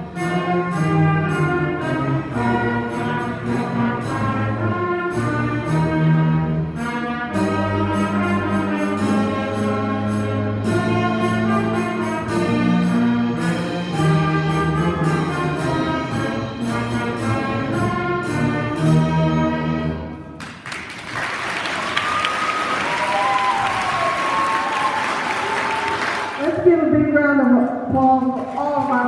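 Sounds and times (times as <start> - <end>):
school concert band playing: 0.0 - 29.0
audience applause: 20.4 - 26.6
high calls from audience: 21.6 - 26.5.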